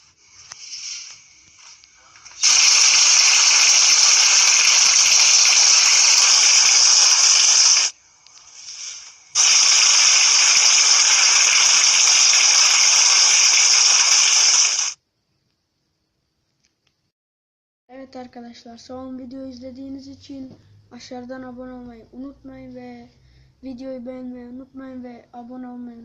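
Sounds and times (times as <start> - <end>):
compressed air hissing bursts: 0.0 - 15.0.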